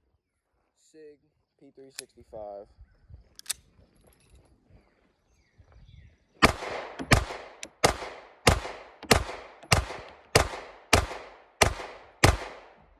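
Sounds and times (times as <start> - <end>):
pistol shots with echo: 6.4 - 12.9.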